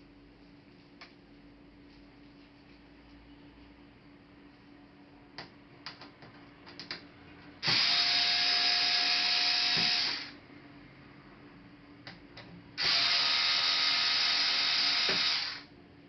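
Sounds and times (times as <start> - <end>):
handheld power tool whirring: 7.6 - 10.4, 12.8 - 15.7.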